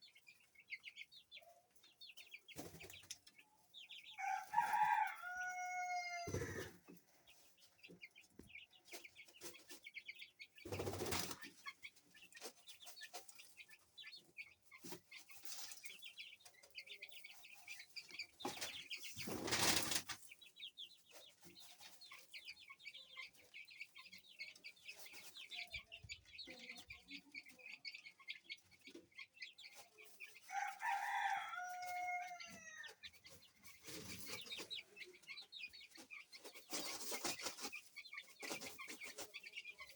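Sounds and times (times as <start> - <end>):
baby chicks peeping: 0.0 - 39.9
rooster crowing: 4.2 - 6.7, 30.5 - 33.0.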